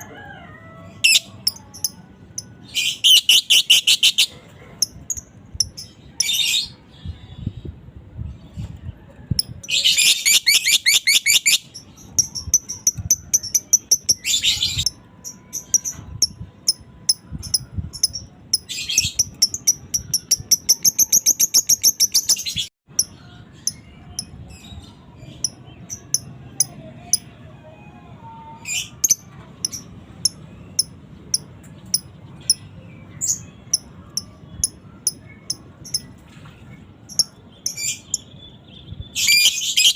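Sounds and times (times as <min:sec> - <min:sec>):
lovebird chirping: 0:28.8 - 0:36.2.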